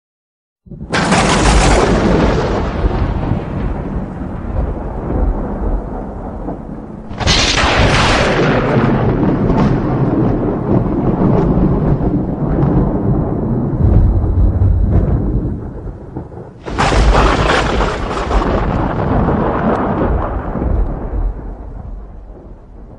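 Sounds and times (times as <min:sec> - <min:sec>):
sharp thunderclap: 0:00.7 - 0:22.9
thunder crackles: 0:00.7 - 0:22.9
thunder rumbling: 0:00.7 - 0:22.9.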